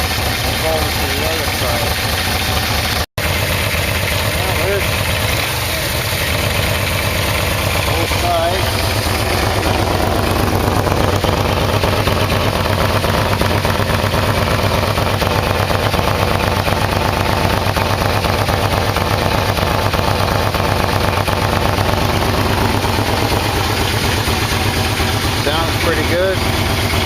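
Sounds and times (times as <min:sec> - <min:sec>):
motorcycle engine idling: 0:00.0 - 0:27.0.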